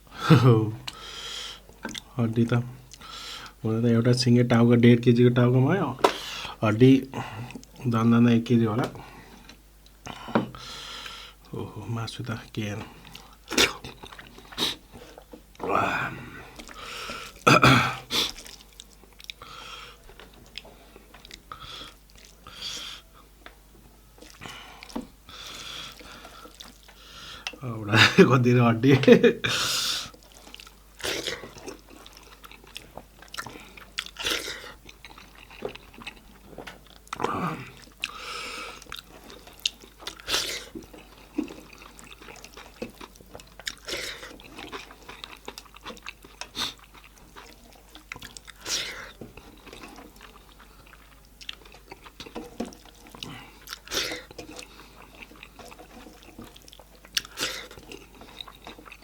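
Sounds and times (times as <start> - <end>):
chewing meat and bone: 12.6 - 27.6, 30.0 - 59.0
wet mouth sounds: 13.2 - 19.6, 29.4 - 59.0.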